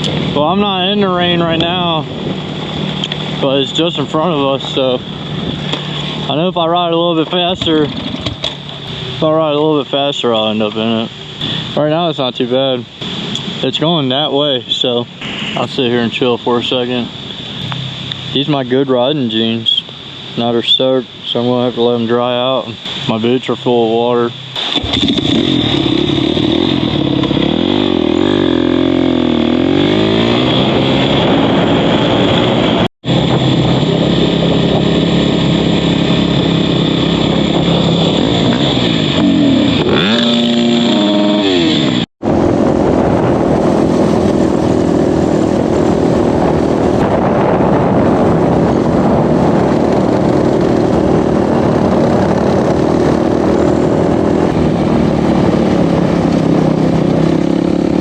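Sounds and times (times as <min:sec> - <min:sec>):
off-road vehicle engine revving: 0:24.2 - 0:47.5, 0:48.2 - 0:58.0.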